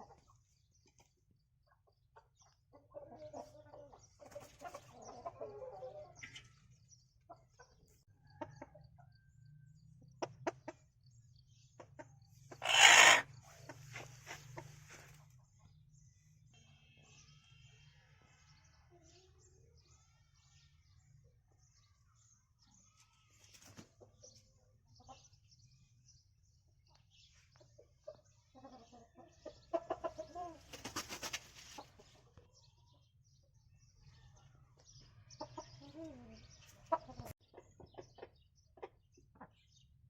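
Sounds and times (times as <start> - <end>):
chickens clucking: 0.0 - 8.8, 11.8 - 15.4, 27.6 - 32.5, 35.3 - 39.6.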